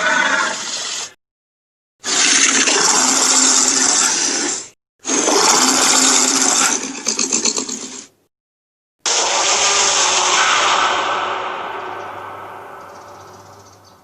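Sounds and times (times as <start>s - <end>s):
loud rushing noise: 9.1s - 14.0s.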